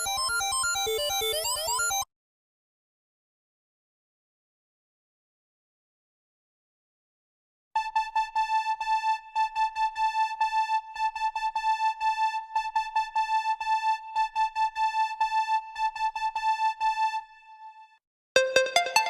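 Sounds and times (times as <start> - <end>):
synthesizer beeping: 18.4 - 19.0.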